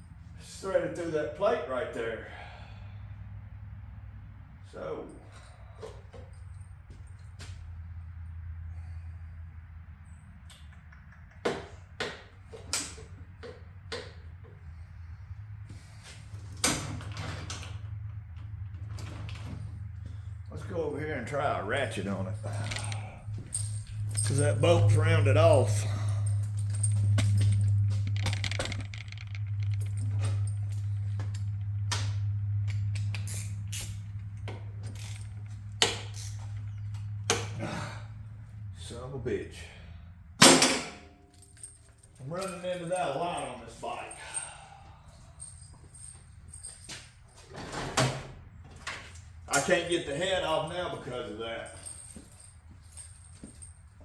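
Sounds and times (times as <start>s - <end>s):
steady low hum: 13.2s - 47.4s
metal tools clanking on engine: 16.4s - 38.2s, 40.4s - 54.0s
metal hand tools clinking: 21.7s - 37.6s
sharp metallic clank: 40.4s - 41.1s.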